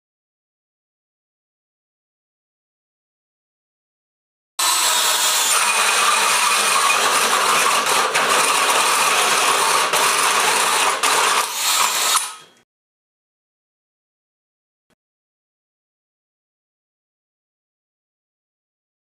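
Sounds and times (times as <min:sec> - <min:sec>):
drill with hole cutter cutting: 0:04.6 - 0:12.6.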